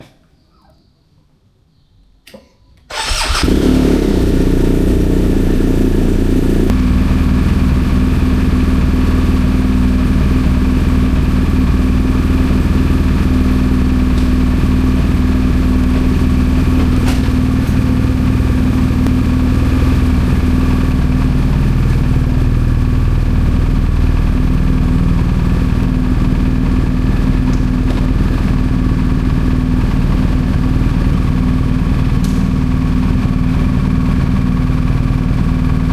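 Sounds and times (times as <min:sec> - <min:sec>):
motorcycle engine starting and idling: 0:02.9 - 0:35.9.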